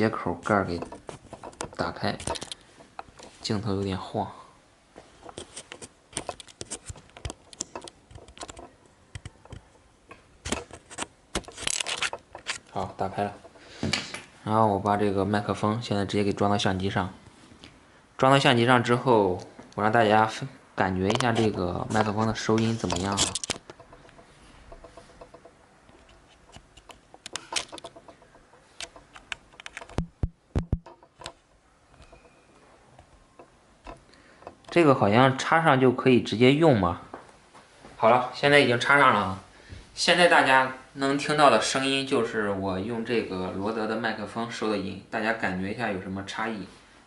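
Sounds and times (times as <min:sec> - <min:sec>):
microphone handling clicks: 0:00.7 - 0:03.4, 0:21.0 - 0:31.4
small plastic clicks and scrapes: 0:05.2 - 0:13.6, 0:21.1 - 0:31.4.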